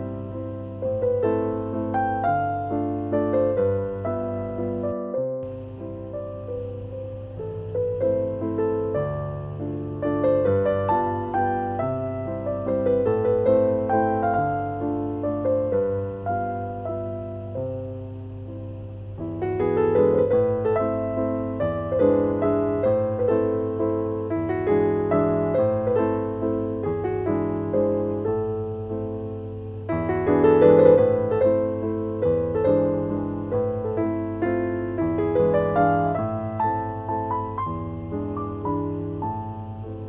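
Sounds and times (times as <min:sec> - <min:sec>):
gentle piano music: 0:00.0 - 0:40.0.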